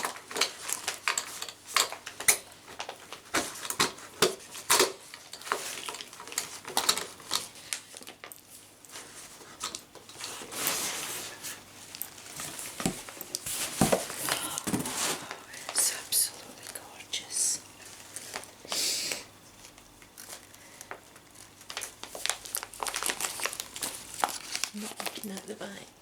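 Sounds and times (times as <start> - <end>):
plastic pages rustling: 0.0 - 16.9, 19.6 - 25.8.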